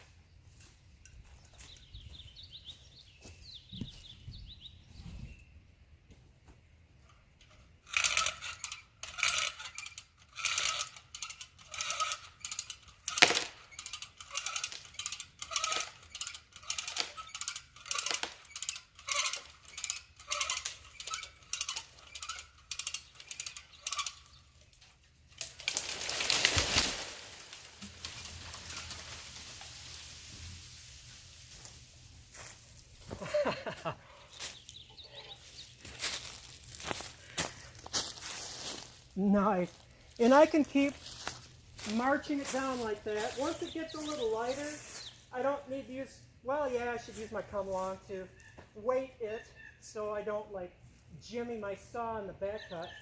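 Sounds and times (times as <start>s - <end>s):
hand winch ratchet clicking: 7.4s - 25.8s
log shifting crash: 25.4s - 33.1s.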